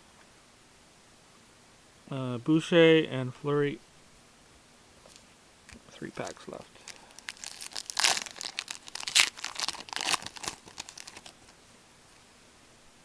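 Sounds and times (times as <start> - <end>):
foil pack crinkling: 6.2 - 11.6.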